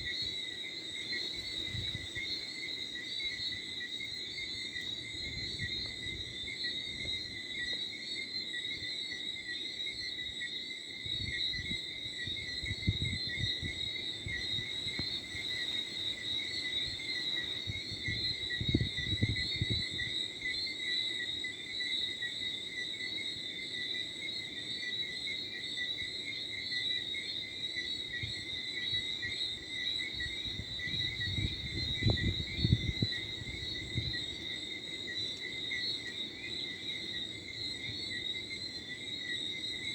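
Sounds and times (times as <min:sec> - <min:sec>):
crickets and frogs trilling: 0:00.0 - 0:39.9
wind buffeting microphone: 0:01.3 - 0:02.4, 0:05.0 - 0:07.3, 0:11.0 - 0:15.7, 0:16.3 - 0:20.2, 0:30.1 - 0:34.4.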